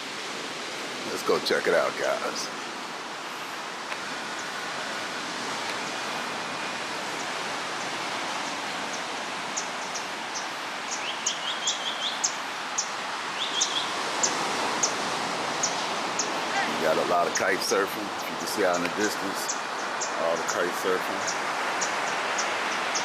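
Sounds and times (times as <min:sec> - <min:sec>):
surf and wind hiss: 0:00.0 - 0:23.0
bird high chirps: 0:09.6 - 0:15.0.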